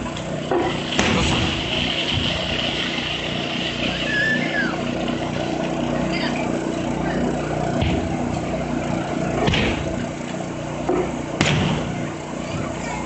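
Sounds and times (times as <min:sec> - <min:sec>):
steady low hum: 0:00.0 - 0:13.0
fireworks bangs: 0:00.4 - 0:06.6, 0:10.9 - 0:12.0.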